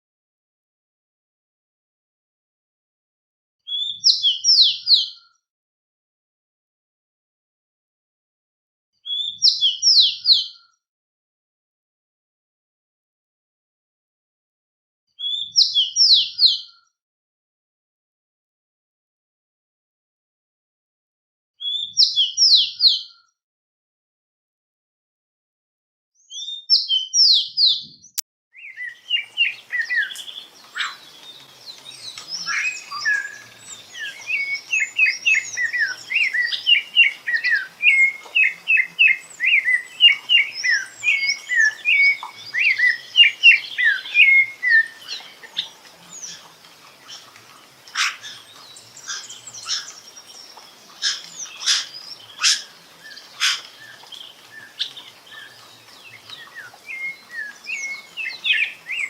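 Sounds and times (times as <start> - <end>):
songbirds chirping: 3.7 - 5.3, 9.1 - 10.7, 15.2 - 16.8, 21.6 - 23.2, 26.2 - 59.0.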